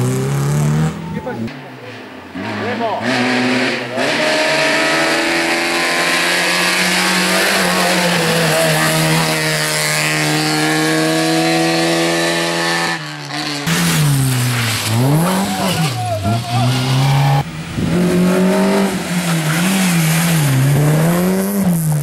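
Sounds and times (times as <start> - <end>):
rally car engine revving: 0.0 - 22.0.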